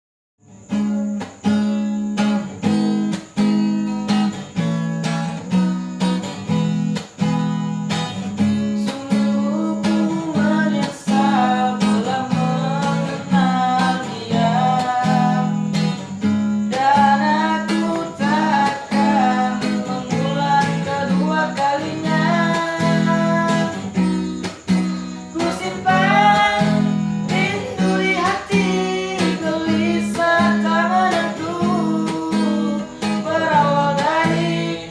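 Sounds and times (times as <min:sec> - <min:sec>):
acoustic guitar strumming: 0:00.5 - 0:34.9
person singing: 0:08.8 - 0:16.0, 0:16.6 - 0:24.0, 0:25.3 - 0:34.9.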